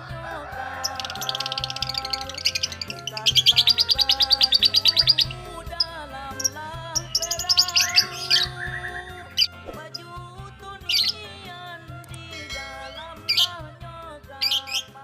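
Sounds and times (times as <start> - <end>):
background music: 0.0 - 15.0
lovebird chirping: 0.9 - 10.1, 10.8 - 11.4, 12.2 - 13.7, 14.4 - 15.0.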